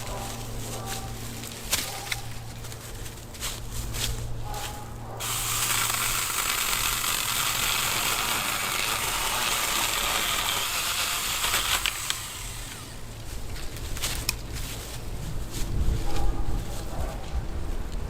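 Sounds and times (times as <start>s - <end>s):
electric chainsaw cutting log: 5.2s - 13.6s.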